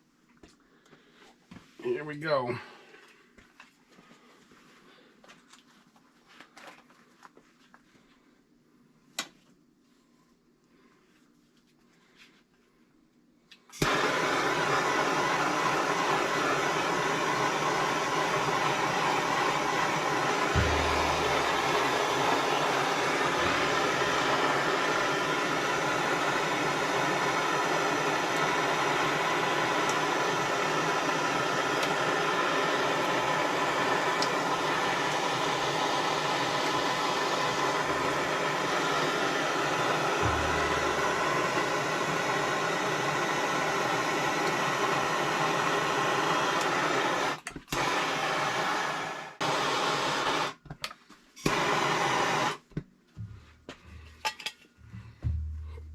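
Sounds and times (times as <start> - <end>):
gas torch hissing: 13.8 - 50.6, 51.4 - 52.6.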